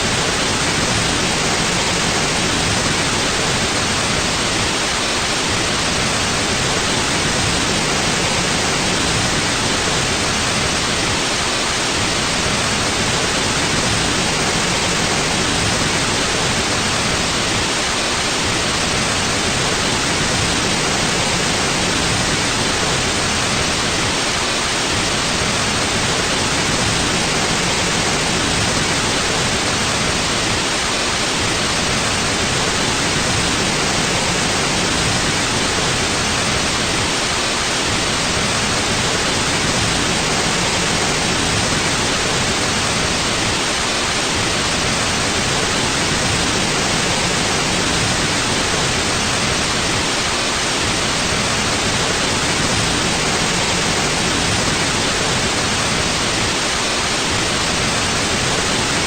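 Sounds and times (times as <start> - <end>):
steady white noise hiss: 0.0 - 59.0.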